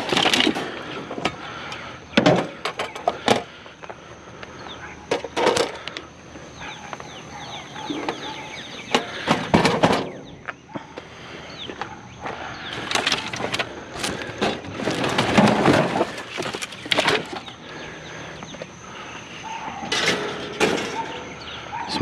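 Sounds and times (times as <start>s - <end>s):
scrap clattering: 0.0s - 1.4s, 12.7s - 17.6s, 19.7s - 21.3s
bird-like chirps: 6.4s - 9.3s, 20.8s - 22.0s.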